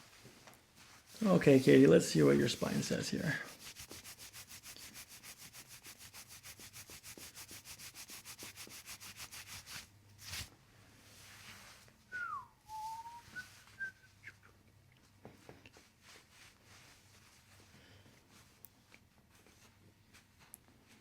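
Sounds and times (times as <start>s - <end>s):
rapid rubbing strokes: 1.2s - 10.5s
short falling whistle: 12.1s - 14.4s.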